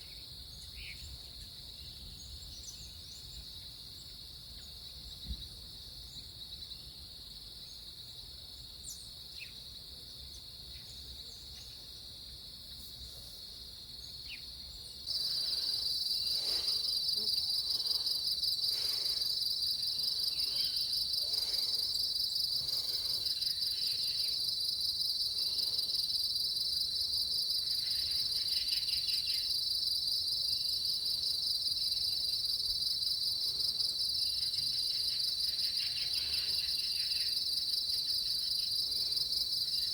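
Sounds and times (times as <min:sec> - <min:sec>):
insects chirring: 0:13.9 - 0:39.9
loud close insect trill: 0:15.1 - 0:39.9.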